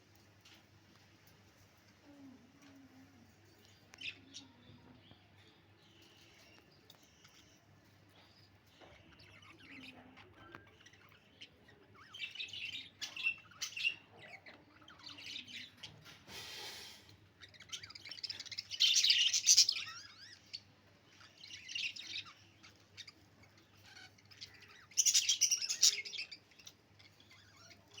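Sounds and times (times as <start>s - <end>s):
budgerigars chirping: 8.8s - 28.0s.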